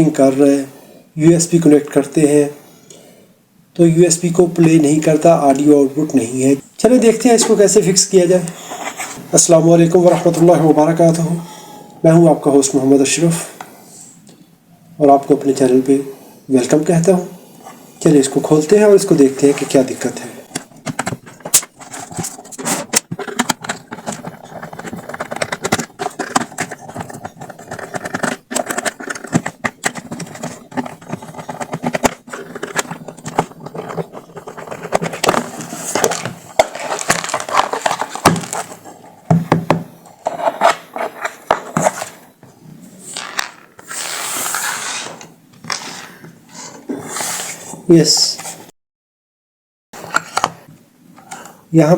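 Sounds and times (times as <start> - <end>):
plastic parts clicking and scraping: 18.3 - 42.2, 43.0 - 46.1, 50.0 - 51.6.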